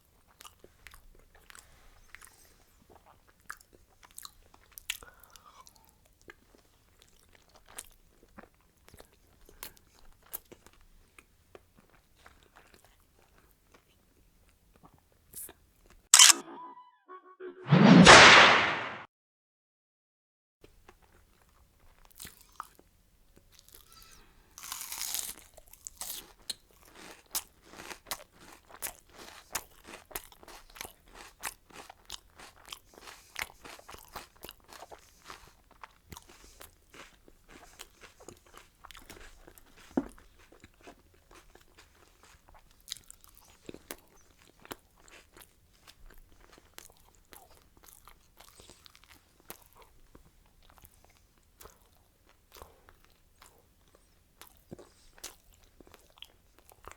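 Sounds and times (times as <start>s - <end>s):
sharp click: 16.2s - 16.8s, 17.6s - 19.0s
person crunching and chewing food: 20.8s - 24.0s, 24.6s - 56.9s.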